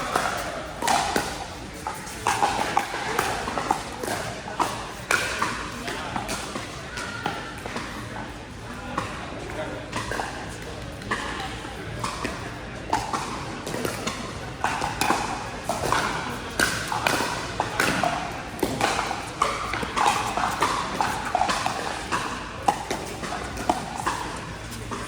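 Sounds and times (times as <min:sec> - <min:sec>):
paddles hitting pickleball: 0:00.0 - 0:08.0, 0:13.0 - 0:25.0.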